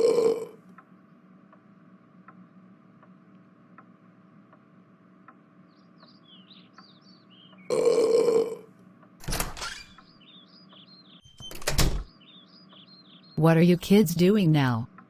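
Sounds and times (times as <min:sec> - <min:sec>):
person burping: 0:00.0 - 0:00.6, 0:07.7 - 0:08.7
faint regular ticking: 0:00.6 - 0:07.7
faint chirping: 0:05.4 - 0:08.7, 0:09.3 - 0:13.8.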